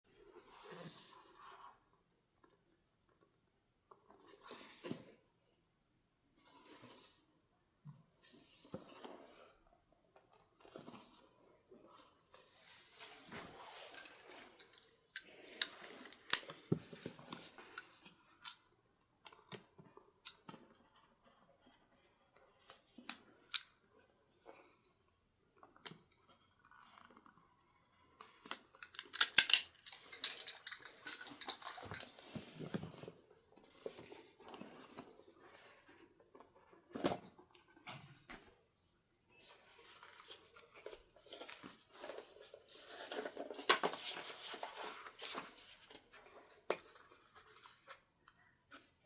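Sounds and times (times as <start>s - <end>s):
cardboard and plastic rustling: 39.5s - 48.2s.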